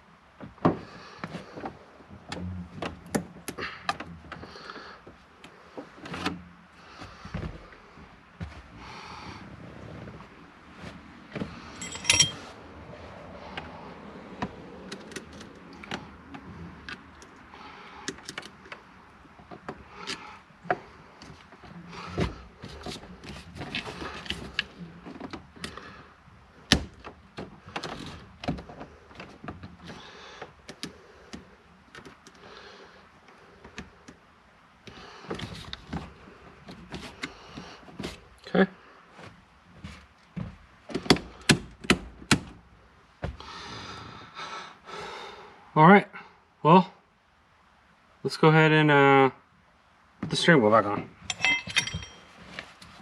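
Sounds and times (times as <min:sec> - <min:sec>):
ringing metal clink: 0:11.8 - 0:12.4, 0:51.3 - 0:52.4
tools and parts clicking and knocking: 0:11.8 - 0:12.4, 0:51.3 - 0:52.4.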